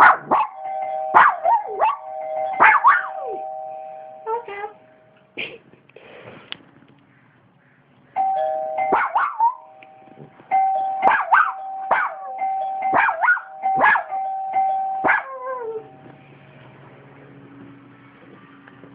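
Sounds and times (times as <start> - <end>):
dog barking: 0.0 - 3.4, 8.9 - 9.6, 11.0 - 14.2, 15.0 - 15.7
doorbell chime tune: 0.6 - 4.8, 8.2 - 16.4.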